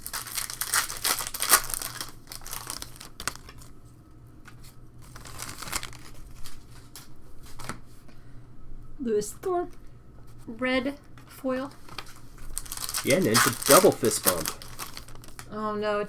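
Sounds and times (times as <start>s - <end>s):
wrappers tearing and crinkling: 0.0s - 3.7s, 5.0s - 7.6s, 11.9s - 15.5s.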